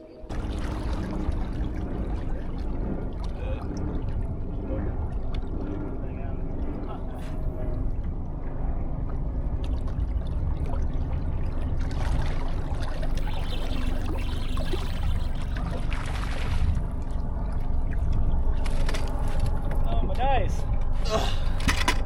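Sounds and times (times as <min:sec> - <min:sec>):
low rumble: 0:00.0 - 0:22.0
water trickling and splashing: 0:00.3 - 0:06.8, 0:09.0 - 0:20.0.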